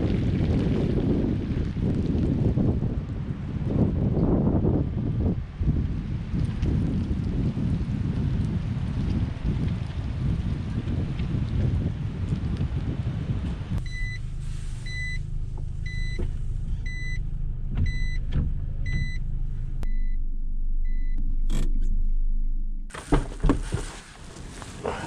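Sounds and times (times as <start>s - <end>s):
van engine humming: 13.3s - 25.0s
electronic warning beeps: 13.8s - 14.2s, 14.9s - 15.2s.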